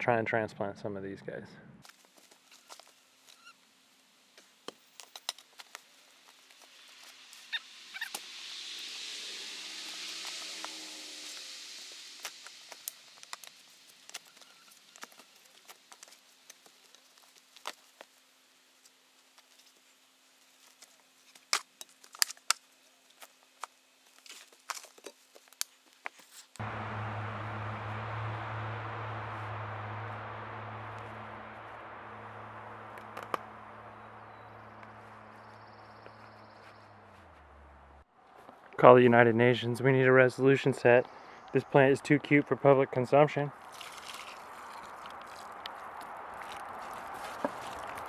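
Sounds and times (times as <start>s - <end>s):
steady hiss: 1.9s - 36.1s
brush and debris snapping and crackling: 10.0s - 18.2s, 20.4s - 26.6s, 43.6s - 48.0s.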